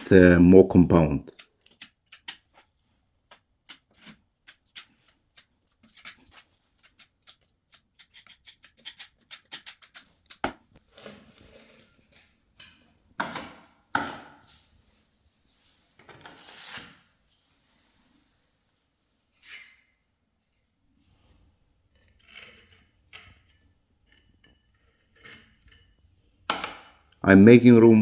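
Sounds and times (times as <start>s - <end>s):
trowel tapping and clicking: 1.3s - 10.6s.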